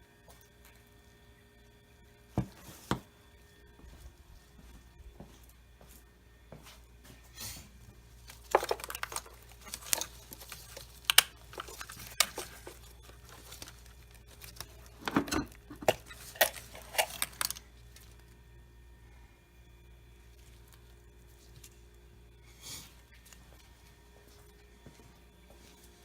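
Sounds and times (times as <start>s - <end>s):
steady low hum: 0.0s - 26.0s
objects clicking and clattering: 8.2s - 18.1s.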